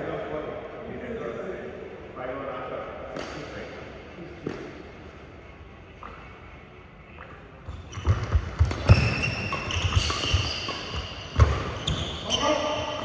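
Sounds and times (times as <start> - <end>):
shoes squeaking on court floor: 7.2 - 13.0
footfalls and racket hits: 8.0 - 12.2.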